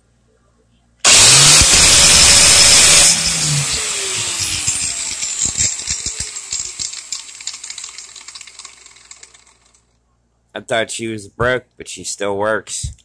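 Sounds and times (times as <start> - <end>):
angle grinder whine spinning down: 1.0 - 9.1
ticks and rattles: 5.1 - 9.8.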